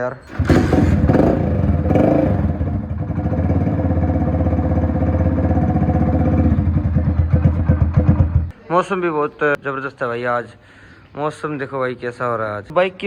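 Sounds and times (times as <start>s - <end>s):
motorcycle engine idling: 0.2s - 8.5s.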